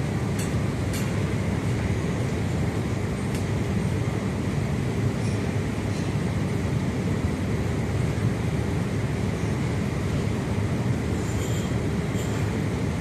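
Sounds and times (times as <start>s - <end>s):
low rumble of city traffic: 0.0s - 13.0s.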